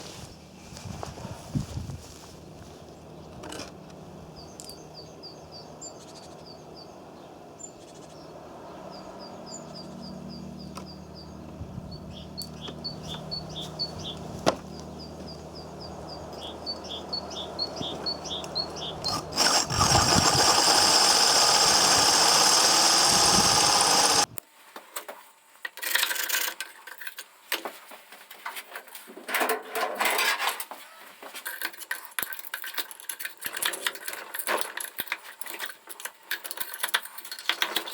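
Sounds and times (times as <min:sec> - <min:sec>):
birds chirping: 0:02.9 - 0:24.3.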